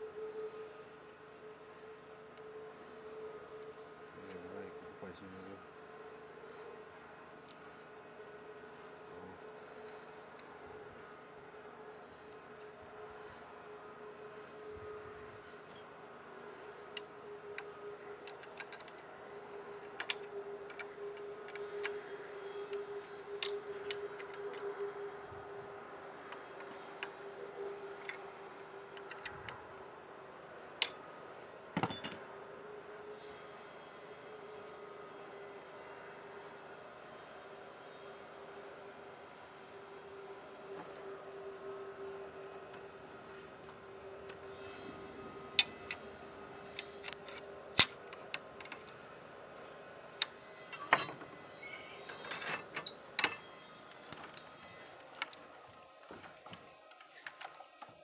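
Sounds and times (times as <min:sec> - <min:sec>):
metallic clicks and knocks: 0:19.9 - 0:22.0, 0:46.8 - 0:48.9, 0:52.1 - 0:54.5
metal clanks with ringing: 0:31.8 - 0:32.3, 0:50.8 - 0:51.3.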